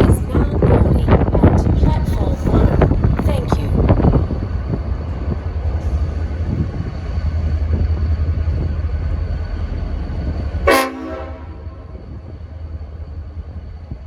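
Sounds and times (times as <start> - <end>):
wind buffeting microphone: 0.0 - 14.0
locomotive air horn blast: 10.6 - 11.8.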